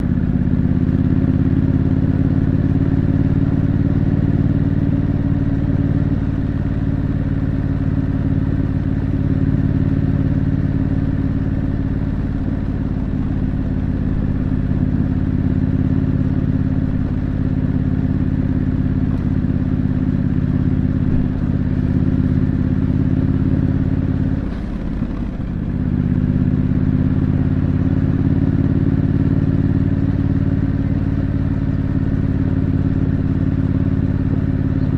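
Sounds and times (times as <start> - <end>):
motorcycle engine rumbling: 0.0 - 34.9.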